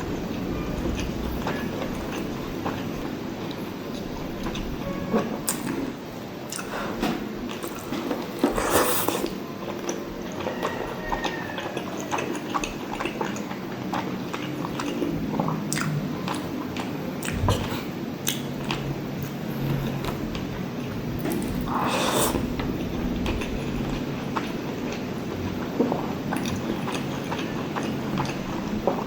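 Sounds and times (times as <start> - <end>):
wet chewing: 6.5 - 29.0.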